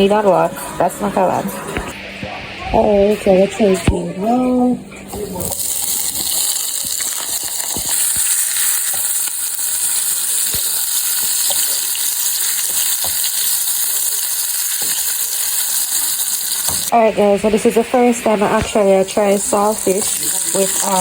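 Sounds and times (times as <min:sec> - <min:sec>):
food sizzling in oil: 0:05.1 - 0:21.0.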